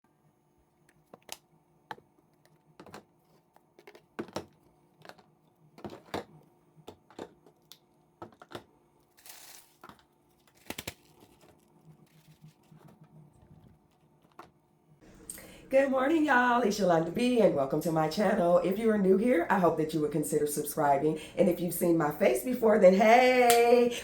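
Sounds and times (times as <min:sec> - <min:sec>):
small objects clicking and knocking: 0:00.8 - 0:14.6.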